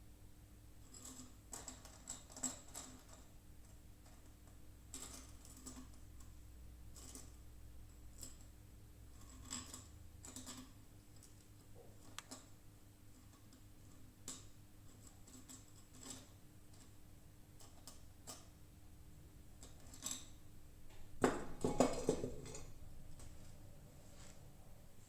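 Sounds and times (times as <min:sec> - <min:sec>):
faint steady hum: 0:00.0 - 0:25.0
faint clicks and light taps: 0:10.3 - 0:12.6.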